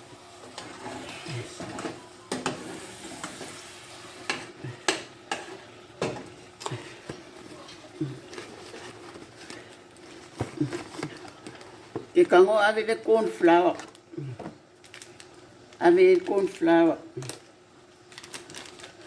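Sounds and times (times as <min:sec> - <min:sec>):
cooking hiss: 0:00.0 - 0:08.3.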